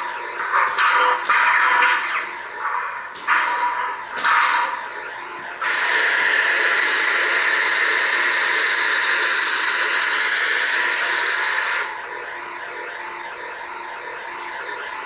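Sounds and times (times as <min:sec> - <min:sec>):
lightsaber blade hum: 0:00.0 - 0:15.0
loud steady hissing effect: 0:05.6 - 0:11.9.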